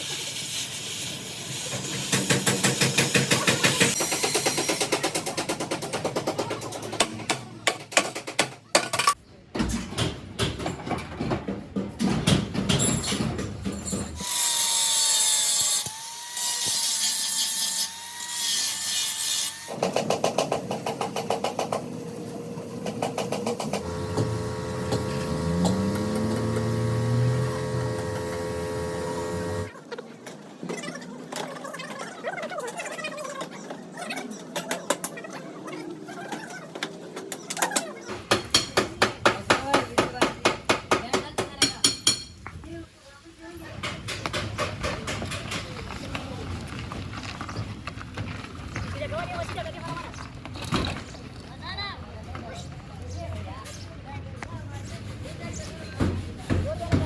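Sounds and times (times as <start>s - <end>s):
power tool whining: 22.4s - 29.8s
rhythmic scraping or sanding: 54.8s - 57.0s.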